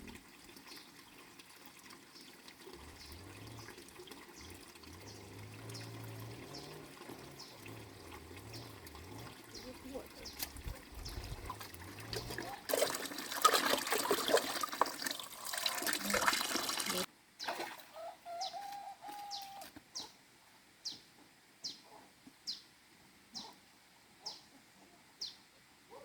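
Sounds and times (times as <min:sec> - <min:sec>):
water splashing loudly: 0:02.7 - 0:17.9
bird chirping: 0:02.8 - 0:12.6.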